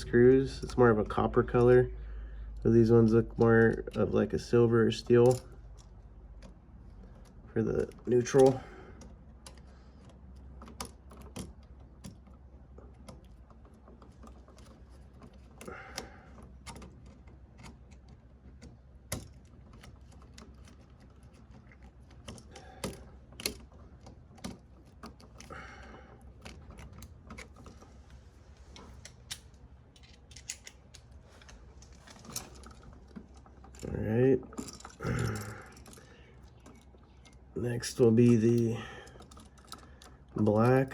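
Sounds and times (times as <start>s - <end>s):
hand tools clicking and tapping: 5.0s - 28.0s.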